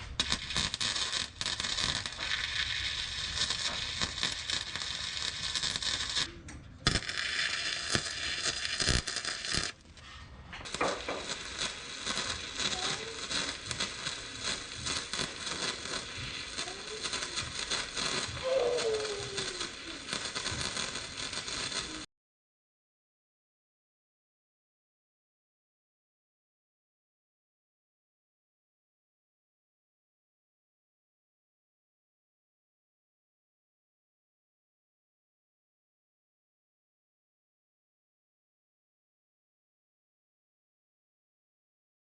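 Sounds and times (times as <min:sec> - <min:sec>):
crackling hiss: 0:00.0 - 0:22.1.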